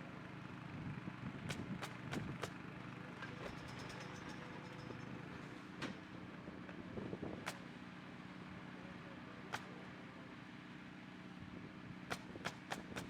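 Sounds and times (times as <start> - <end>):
nail gun shots: 1.4 - 2.6, 12.1 - 13.0.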